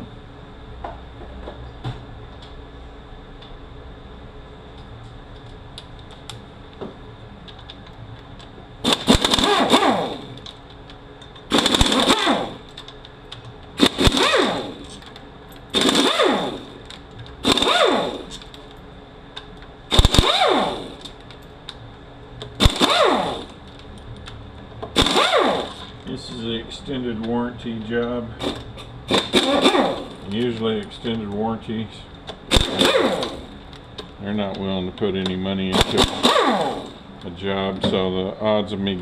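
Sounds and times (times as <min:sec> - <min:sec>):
impact wrench hammering: 0:08.8 - 0:10.4, 0:11.5 - 0:12.7, 0:13.8 - 0:15.1, 0:15.7 - 0:18.4, 0:19.9 - 0:21.1, 0:22.6 - 0:23.6, 0:24.9 - 0:25.9, 0:28.4 - 0:30.4, 0:32.5 - 0:33.6, 0:35.7 - 0:37.0.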